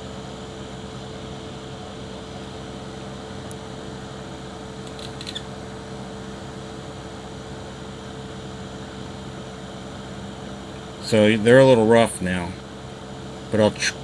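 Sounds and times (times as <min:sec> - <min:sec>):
electrical mains hum: 0:00.0 - 0:14.0
small clicks: 0:04.8 - 0:05.5.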